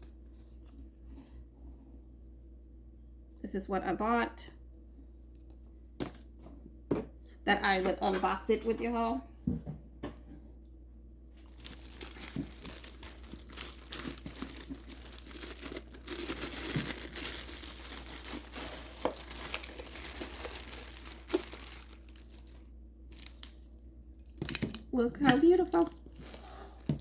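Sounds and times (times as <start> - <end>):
packaging crinkling and rustling: 11.4 - 27.0.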